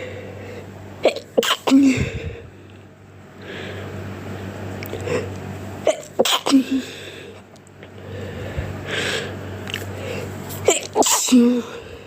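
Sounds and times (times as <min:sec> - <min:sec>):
person sneezing: 0:01.0 - 0:02.2, 0:05.9 - 0:07.0, 0:10.5 - 0:11.8.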